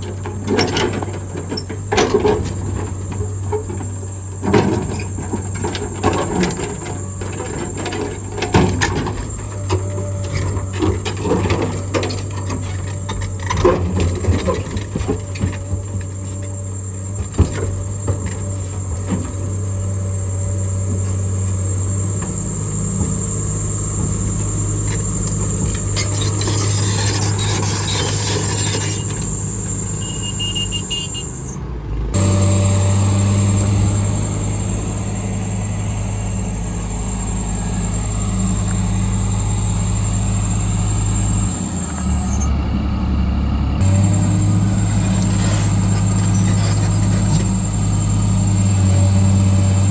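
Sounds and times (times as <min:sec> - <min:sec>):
knocks and clanks: 0:00.0 - 0:19.6, 0:20.9 - 0:29.6
diesel engine humming: 0:00.0 - 0:49.9.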